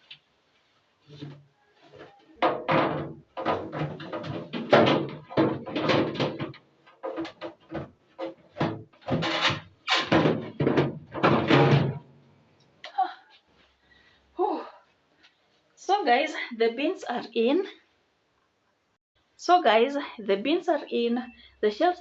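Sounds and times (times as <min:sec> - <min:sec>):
plastic bins scraping and rattling: 0:01.0 - 0:12.1.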